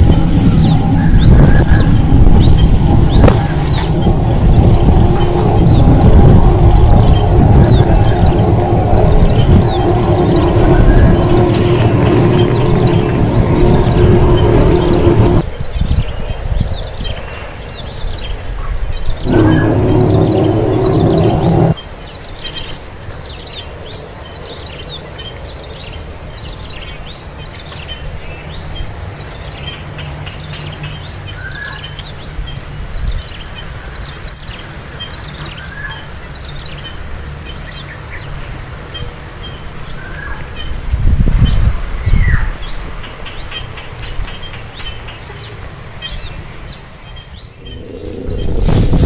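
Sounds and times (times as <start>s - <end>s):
high-pitched insect buzz: 0.0s - 15.4s, 19.3s - 21.8s
low rumbling thumps: 0.0s - 15.4s, 19.2s - 21.8s.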